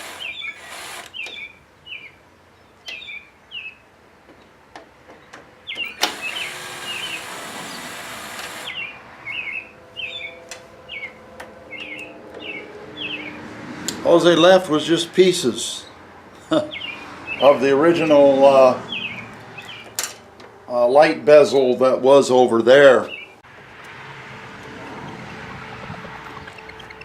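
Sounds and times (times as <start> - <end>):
small birds chirping: 0.0 - 3.9, 5.1 - 11.1, 16.6 - 20.0, 26.3 - 27.0.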